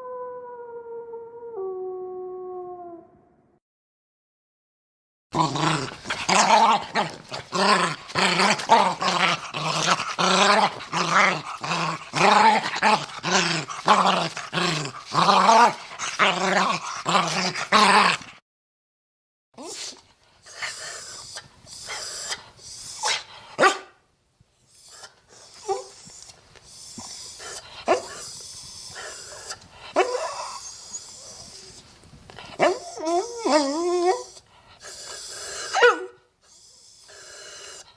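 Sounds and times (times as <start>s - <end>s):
faint breathy sounds: 36.4s - 37.9s.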